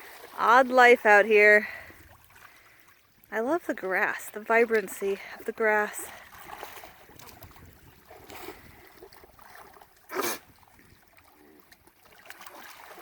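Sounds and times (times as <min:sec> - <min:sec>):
trickling creek water: 0:00.0 - 0:13.0.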